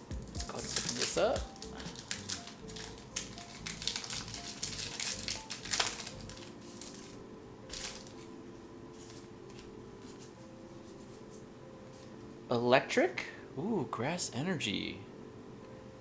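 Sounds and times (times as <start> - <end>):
soft background music: 0.0 - 16.0
foil wrapper tearing and crinkling: 0.2 - 8.3.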